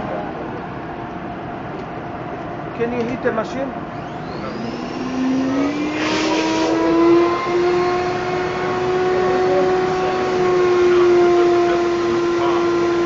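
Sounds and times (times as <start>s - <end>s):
turbine sprayer motor whine: 3.7s - 13.0s
air hiss burst: 6.0s - 6.8s.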